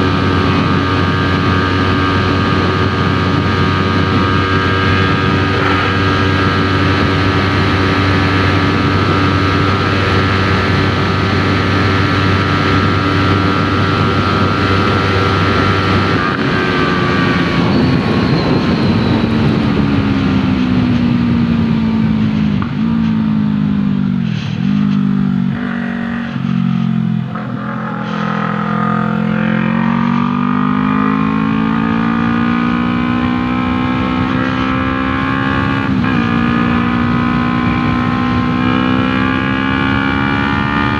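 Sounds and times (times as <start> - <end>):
motorcycle engine: 0.0 - 40.9.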